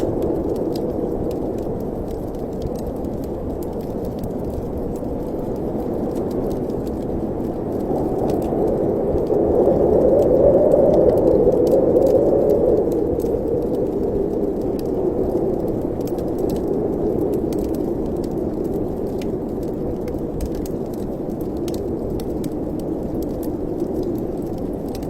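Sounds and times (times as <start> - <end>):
wood fire crackling: 0.0 - 25.0
wind rushing: 7.3 - 16.0.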